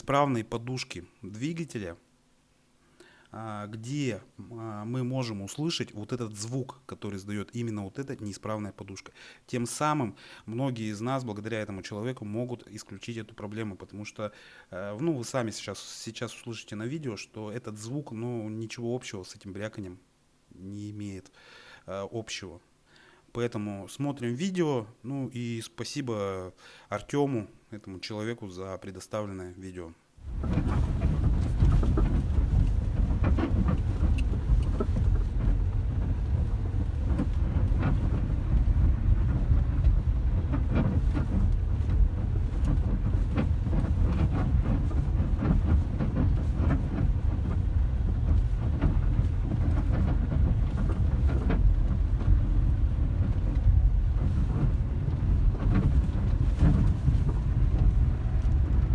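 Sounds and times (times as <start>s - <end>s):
car engine low rumble: 30.2s - 58.9s.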